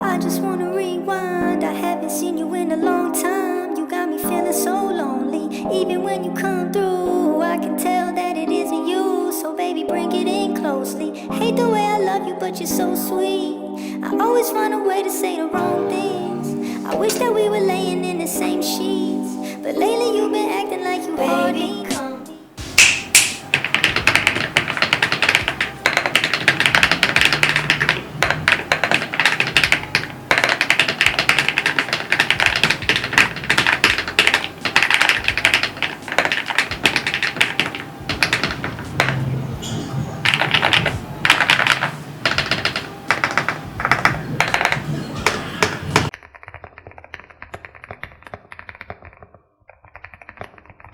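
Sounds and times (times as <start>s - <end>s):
mechanical keyboard typing: 22.8s - 39.6s, 40.2s - 50.9s.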